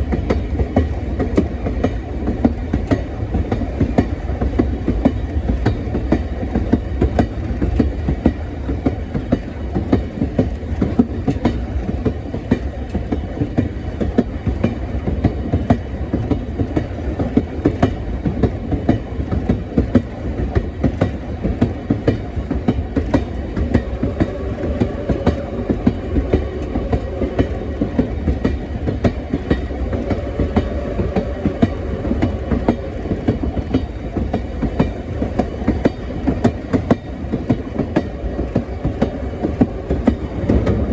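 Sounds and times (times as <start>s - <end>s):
train rumbling on track: 0.0s - 40.9s
faint steady tone: 23.0s - 40.9s.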